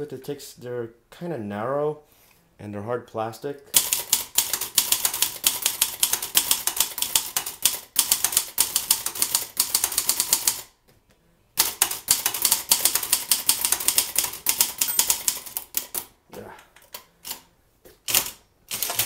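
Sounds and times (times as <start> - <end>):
fast manual typewriter typing: 3.7 - 10.7, 11.6 - 16.1, 18.0 - 19.0.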